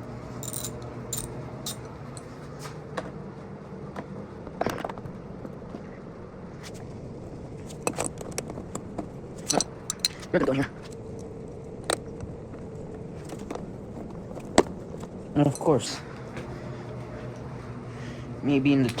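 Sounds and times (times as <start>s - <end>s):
steady low hum: 0.0s - 19.0s
metal tools clinking and scraping: 0.4s - 2.4s, 9.4s - 11.0s, 14.3s - 16.5s.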